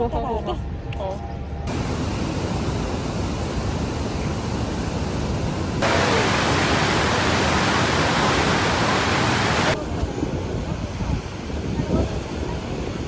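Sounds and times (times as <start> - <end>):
waterfall roaring: 1.7 - 9.8.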